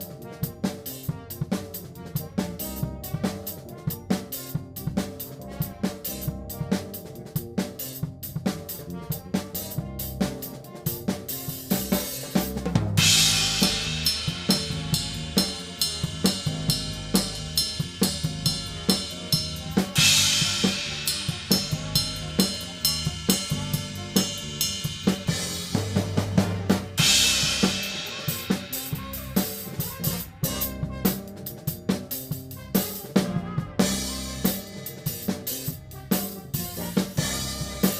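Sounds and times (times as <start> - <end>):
band instruments playing: 0.0 - 37.9
drum kit playing: 0.0 - 37.9
cymbal crashes: 13.0 - 30.2.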